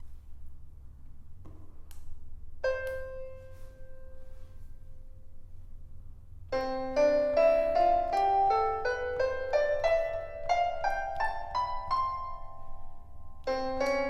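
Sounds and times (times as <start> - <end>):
digital piano notes: 2.6 - 5.4, 6.5 - 14.0.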